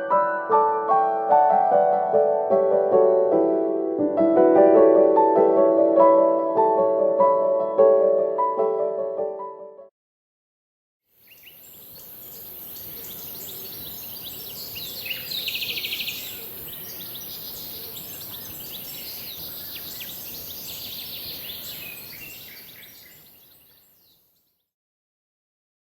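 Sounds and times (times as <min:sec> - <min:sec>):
steady high hiss: 0:11.2 - 0:23.1
fast bird trill: 0:11.2 - 0:23.8
birds chirping: 0:11.2 - 0:24.5.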